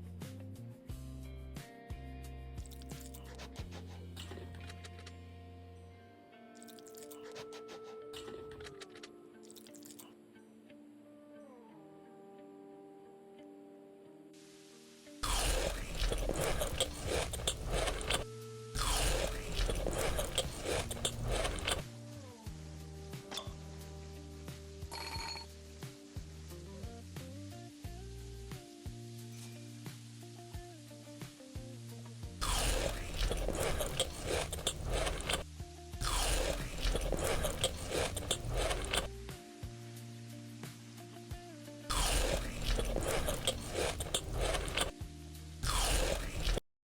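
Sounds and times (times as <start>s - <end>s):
crunchy chewing and biting: 2.6s - 4.9s, 6.6s - 10.1s, 15.2s - 21.9s, 32.4s - 39.2s, 41.9s - 45.0s, 45.6s - 46.6s.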